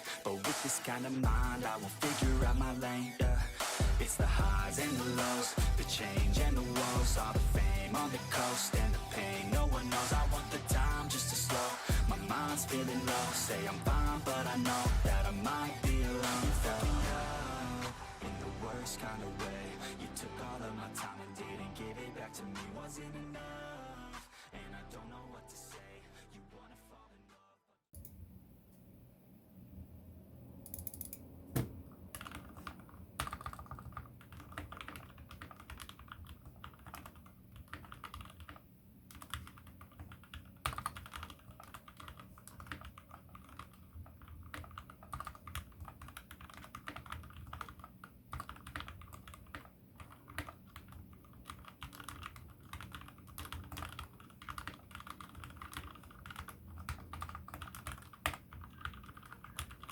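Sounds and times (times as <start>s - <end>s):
mechanical keyboard typing: 32.1s - 59.9s.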